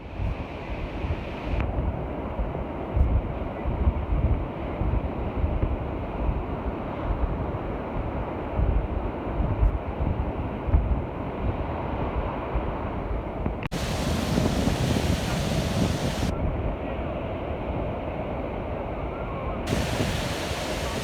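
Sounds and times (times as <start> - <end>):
wind buffeting microphone: 8.6 - 17.0, 19.7 - 21.0
surf breaking on a beach: 13.7 - 18.8, 19.6 - 21.0.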